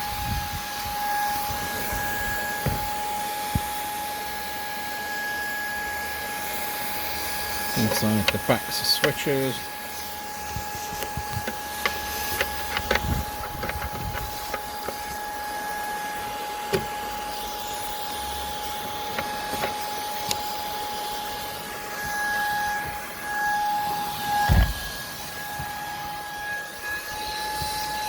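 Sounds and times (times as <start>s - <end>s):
cordless vacuum whining: 0.0s - 28.0s
nozzle tapping on plastic trim: 10.6s - 15.2s, 16.7s - 17.0s.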